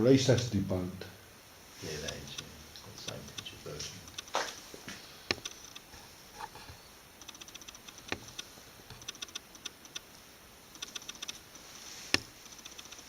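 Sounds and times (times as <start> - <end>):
faint sharp clicks and ticks: 0.3 - 0.6, 1.7 - 13.0.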